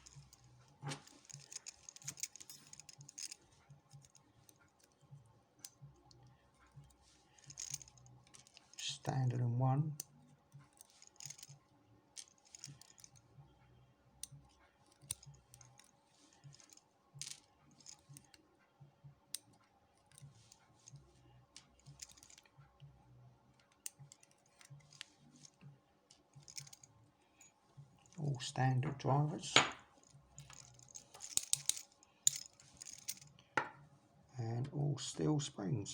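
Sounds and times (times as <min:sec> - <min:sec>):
lock parts clicking and tapping: 0:00.0 - 0:09.0, 0:10.0 - 0:11.6, 0:12.2 - 0:13.2, 0:14.2 - 0:18.4, 0:19.3 - 0:21.0, 0:21.6 - 0:22.9, 0:23.6 - 0:28.2, 0:29.5 - 0:33.8.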